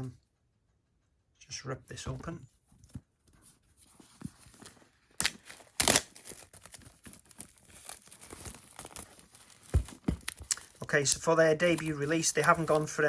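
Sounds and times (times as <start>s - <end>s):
packaging rustling and crinkling: 3.8s - 13.0s
packaging ripping: 4.6s - 10.8s.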